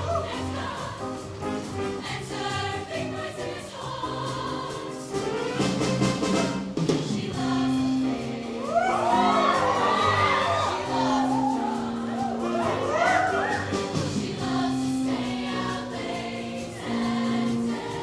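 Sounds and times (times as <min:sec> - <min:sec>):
bass line and drum accompaniment: 0:00.0 - 0:18.0
choir singing in harmony: 0:00.0 - 0:18.0.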